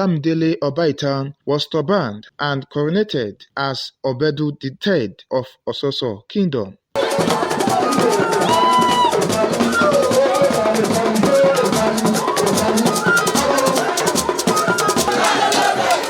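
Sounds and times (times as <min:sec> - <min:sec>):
held high tone: 0:07.0 - 0:15.7
drums and shakers rhythm: 0:07.0 - 0:16.0.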